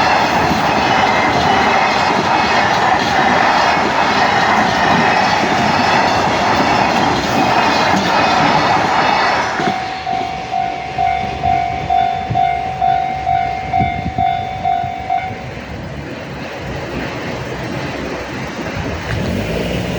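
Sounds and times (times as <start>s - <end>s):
level crossing warning bell: 0.0s - 15.8s
train rumble: 0.0s - 19.9s.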